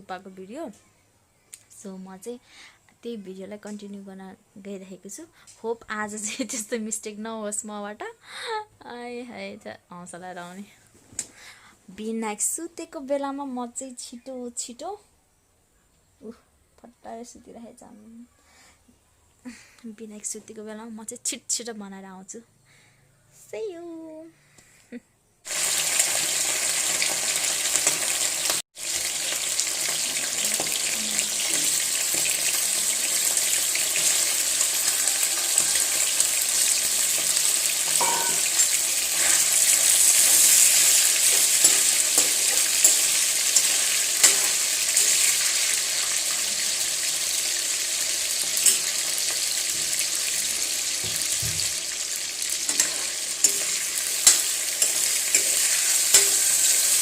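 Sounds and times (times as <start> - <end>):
food sizzling in a hot pan: 25.5 - 57.0.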